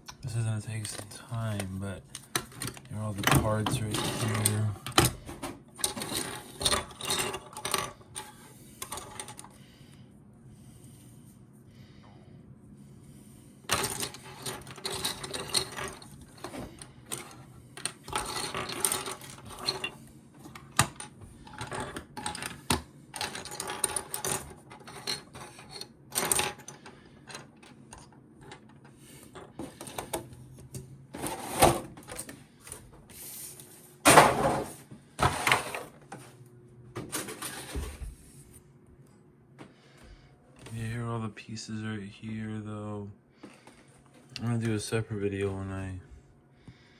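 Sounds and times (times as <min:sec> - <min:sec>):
light clacking of plastic parts: 0:00.0 - 0:09.6.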